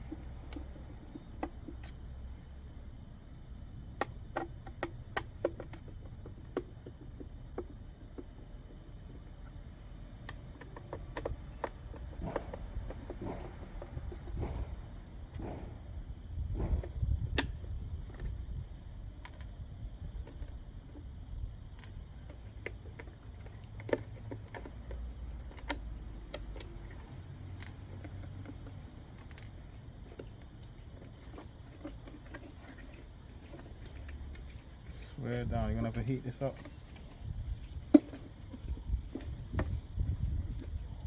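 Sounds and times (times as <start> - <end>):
small clicks and taps of tools: 4.0 - 8.6, 10.2 - 14.6, 21.7 - 35.2.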